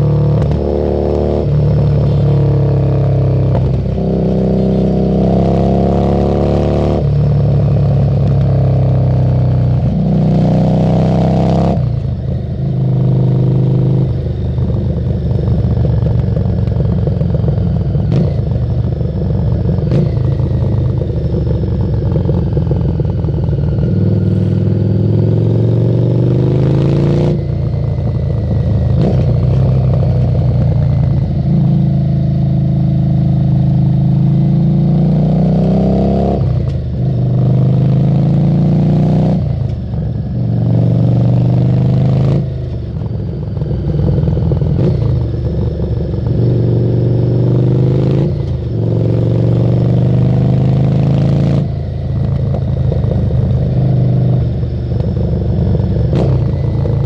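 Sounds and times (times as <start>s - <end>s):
motorcycle engine revving: 0.0s - 57.0s.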